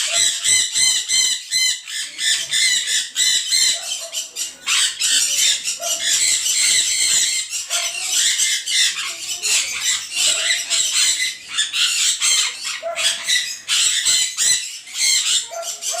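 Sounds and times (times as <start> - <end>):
small birds chattering: 0.0 - 16.0.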